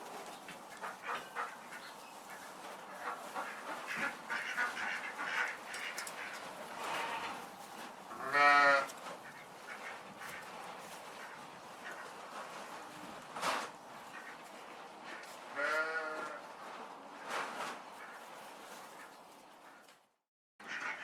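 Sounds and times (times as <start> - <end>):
farm animals calling softly: 0.0 - 13.3, 13.9 - 17.3.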